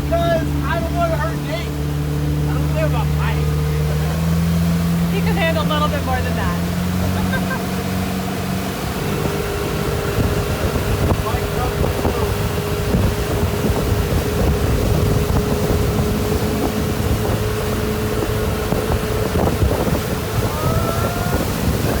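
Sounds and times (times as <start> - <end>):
motorboat engine running: 0.0 - 22.0
water rushing: 0.0 - 22.0
wind buffeting microphone: 0.0 - 22.0
person calling out: 20.4 - 21.5.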